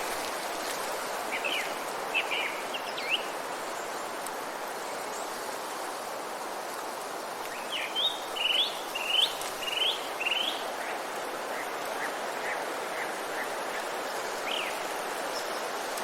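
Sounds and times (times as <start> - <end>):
steady background hiss: 0.0 - 16.0
songbird singing: 1.2 - 5.5, 7.5 - 16.0.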